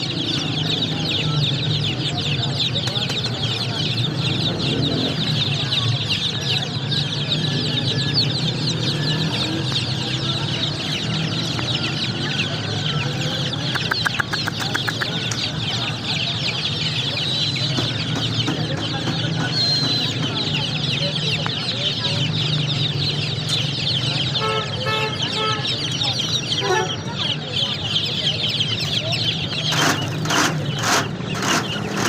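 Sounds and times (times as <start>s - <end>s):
chicks peeping: 0.0s - 32.0s
quick run of clicks: 13.6s - 15.5s.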